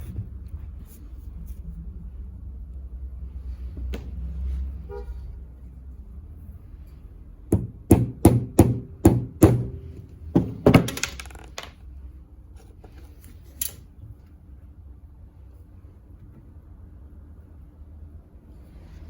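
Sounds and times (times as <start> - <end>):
sharp knocks: 7.5 - 11.3.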